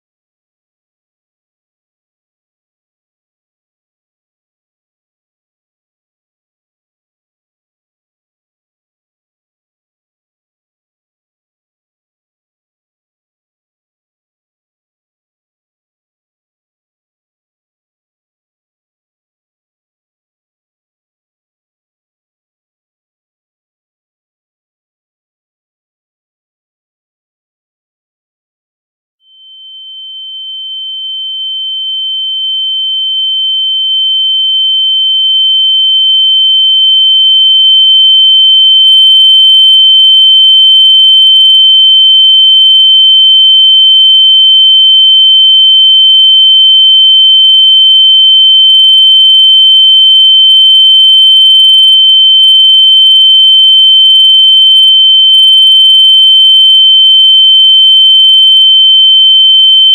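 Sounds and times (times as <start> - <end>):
high-pitched electronic ringing tone: 29.3 - 59.9.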